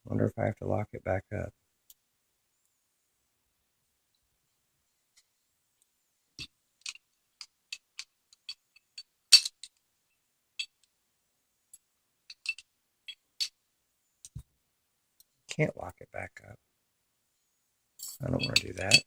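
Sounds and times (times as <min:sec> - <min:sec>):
padlock parts clicking and clinking: 0:06.4 - 0:09.8, 0:10.6 - 0:10.9, 0:11.8 - 0:13.6, 0:18.0 - 0:19.0.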